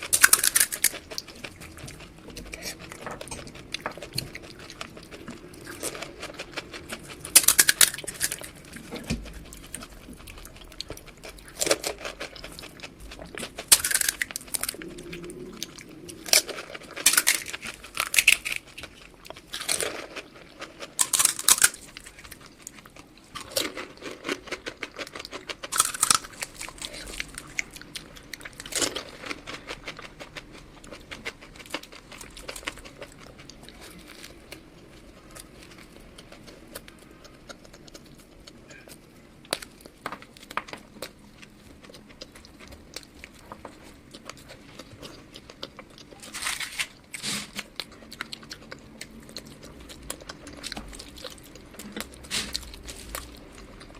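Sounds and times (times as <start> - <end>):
person biting and chewing: 0.0 - 41.2
crunchy crackles: 0.0 - 53.9.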